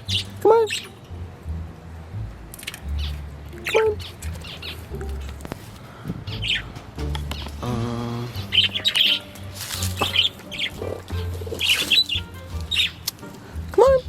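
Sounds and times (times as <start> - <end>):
budgerigars chirping: 0.0 - 1.0, 2.9 - 5.4, 6.3 - 7.6, 8.3 - 13.2.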